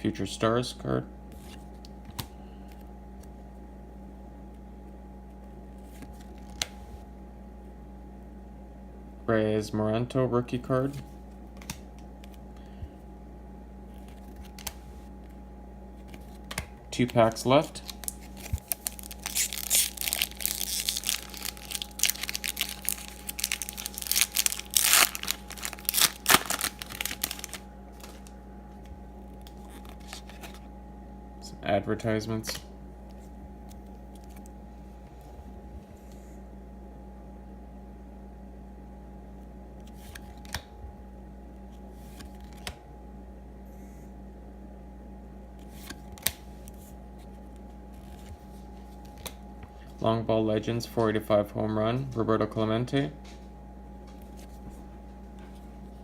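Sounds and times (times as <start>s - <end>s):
steady hum: 0.0s - 56.0s
card stock rustling: 16.0s - 30.7s
wrapper crinkling and tearing: 17.6s - 28.4s, 29.4s - 30.6s.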